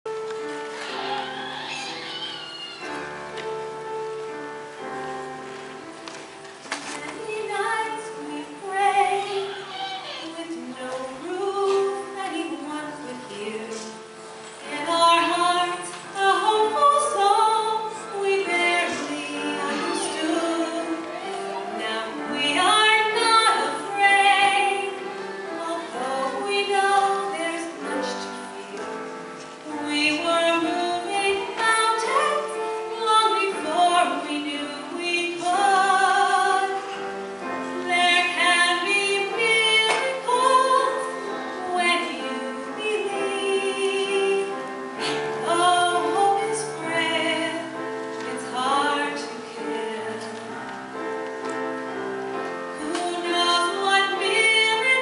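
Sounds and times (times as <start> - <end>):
women singing a slow ballad: 7.0 - 14.1, 14.7 - 37.0.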